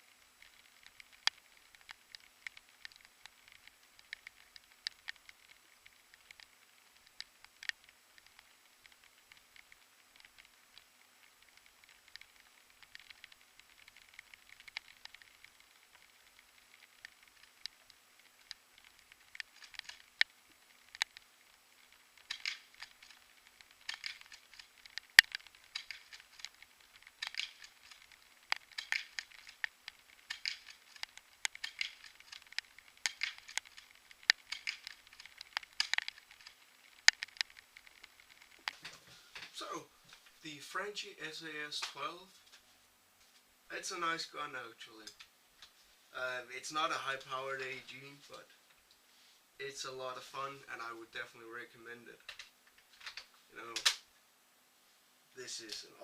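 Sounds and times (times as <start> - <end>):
crinkling crackling rustle: 0.0 - 56.0
sharp clicks: 0.4 - 39.5, 52.2 - 54.1.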